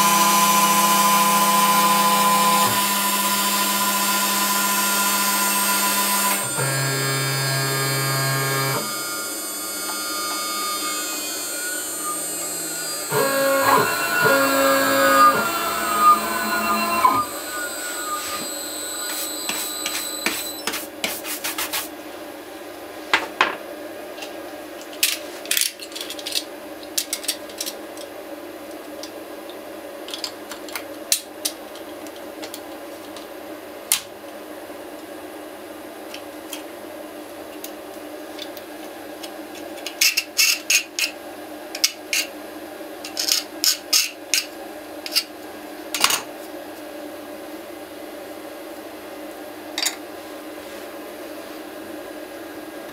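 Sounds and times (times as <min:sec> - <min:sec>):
router spindle humming: 0:00.0 - 0:20.6.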